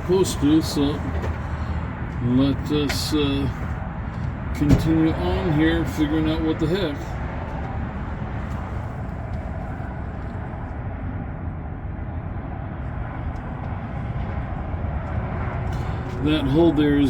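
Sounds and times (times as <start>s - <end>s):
low outdoor rumble: 0.0s - 17.0s.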